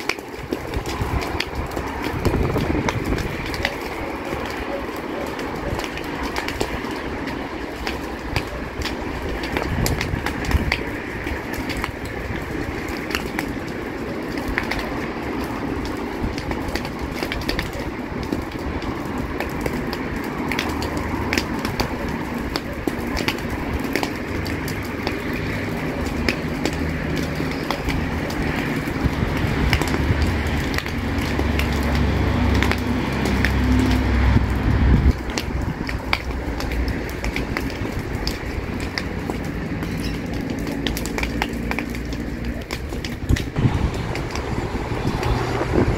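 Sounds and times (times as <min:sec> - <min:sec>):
fire crackling and snapping: 0:00.0 - 0:45.9
low rumble: 0:43.5 - 0:45.9.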